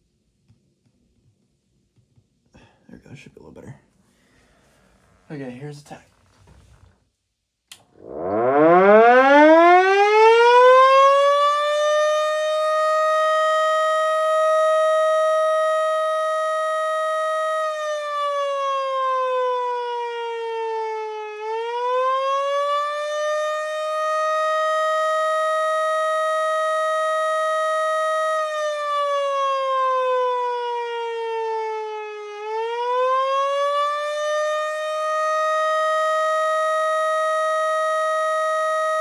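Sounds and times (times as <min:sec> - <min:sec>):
siren wailing: 0:07.8 - 0:39.0.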